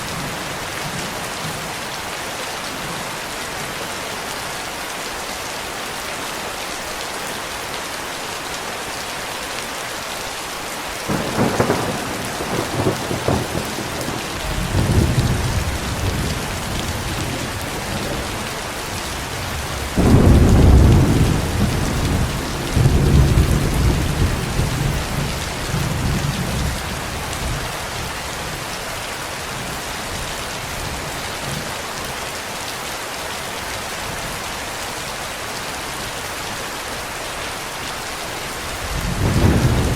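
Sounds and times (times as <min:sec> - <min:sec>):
heavy rain: 0:00.0 - 0:39.9
thunder clap and rumble: 0:11.1 - 0:28.1, 0:38.8 - 0:39.9.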